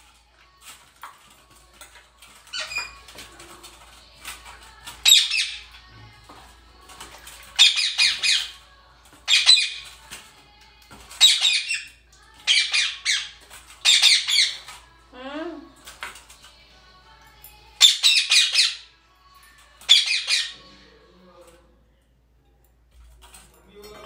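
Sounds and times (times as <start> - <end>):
parakeet squawking: 2.5 - 3.1, 5.0 - 5.8, 7.6 - 8.6, 9.3 - 9.9, 11.2 - 14.7, 17.8 - 19.0, 19.9 - 20.7.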